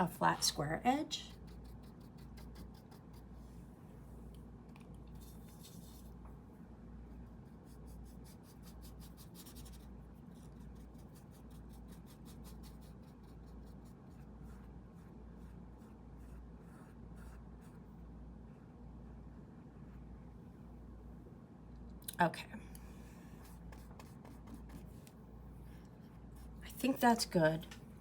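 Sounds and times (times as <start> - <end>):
faint low hum: 0.0 - 28.0
paintbrush scrubbing on canvas: 23.2 - 25.2.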